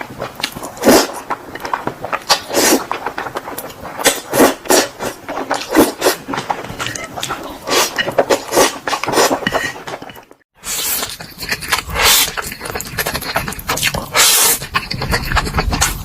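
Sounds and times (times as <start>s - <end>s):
wet chewing and mouth smacks: 0.0s - 16.0s
cutlery clinking: 5.4s - 10.4s.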